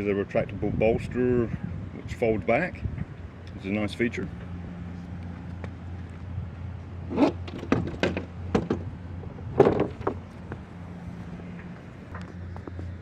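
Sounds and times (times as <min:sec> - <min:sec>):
knocks and clattering bumps: 0:07.2 - 0:10.6.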